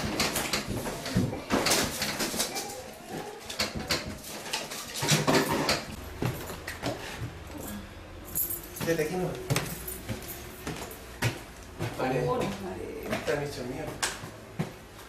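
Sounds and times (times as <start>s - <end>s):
footsteps: 0.0s - 7.6s, 8.3s - 15.0s
doors: 0.0s - 7.7s.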